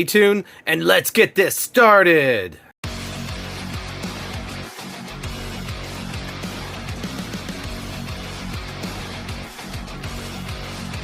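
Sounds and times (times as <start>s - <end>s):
rock music: 2.8s - 11.0s
steady drum beat: 2.8s - 11.0s
strummed electric guitar: 2.9s - 11.0s.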